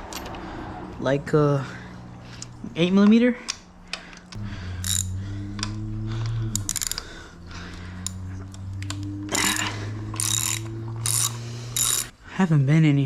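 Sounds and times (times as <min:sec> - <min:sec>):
power driver motor running: 0:04.4 - 0:12.1
tool and bolt rattling: 0:06.6 - 0:07.1, 0:09.3 - 0:12.1.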